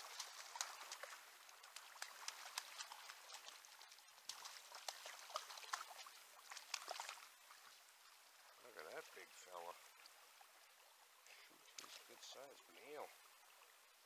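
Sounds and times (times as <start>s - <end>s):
fish splashing water: 0.0s - 7.4s.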